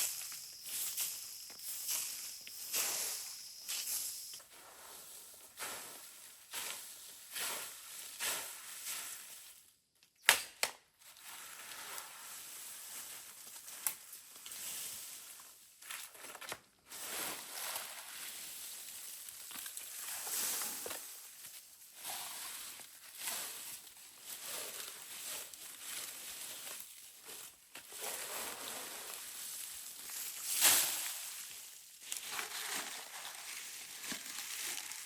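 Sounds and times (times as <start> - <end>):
rustling and scraping: 32.1 - 35.0.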